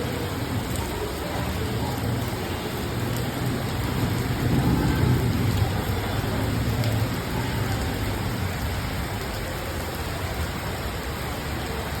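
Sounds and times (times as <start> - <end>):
steady rain falling: 0.0 - 12.0.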